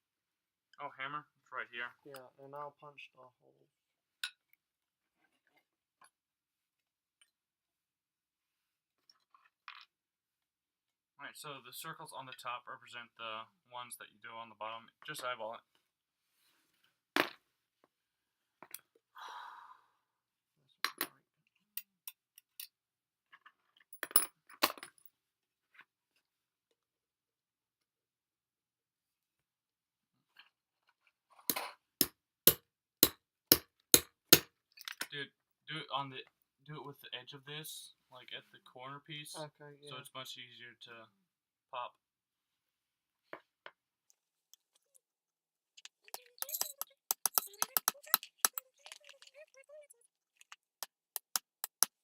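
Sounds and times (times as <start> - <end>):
small metal parts clinking: 45.9 - 49.4.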